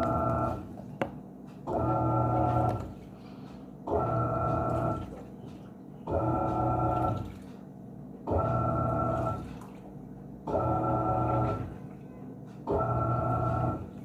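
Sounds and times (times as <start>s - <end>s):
washing machine motor humming: 0.0s - 14.0s
water sloshing: 4.2s - 7.6s, 8.6s - 10.1s.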